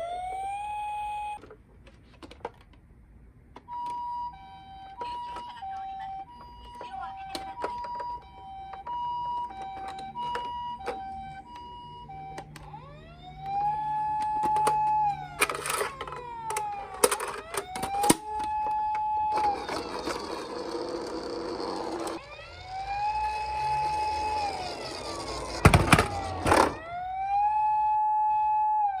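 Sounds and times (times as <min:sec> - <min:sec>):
two-tone toy siren: 0:00.0 - 0:01.4, 0:03.6 - 0:29.0
wailing toy siren: 0:00.0 - 0:01.4, 0:03.7 - 0:29.0
plastic clacks: 0:01.4 - 0:02.8, 0:06.4 - 0:11.7, 0:13.4 - 0:21.2.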